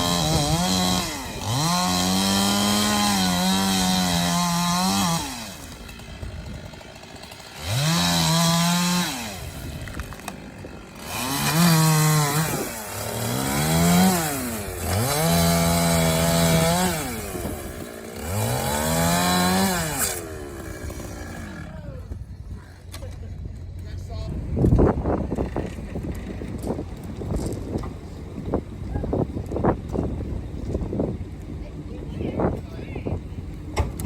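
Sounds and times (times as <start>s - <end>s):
chainsaw revving: 0.0s - 22.3s.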